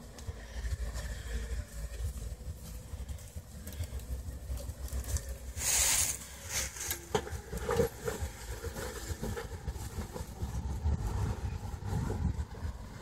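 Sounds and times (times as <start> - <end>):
engine running low: 0.0 - 13.0
burst of hiss: 5.6 - 6.9.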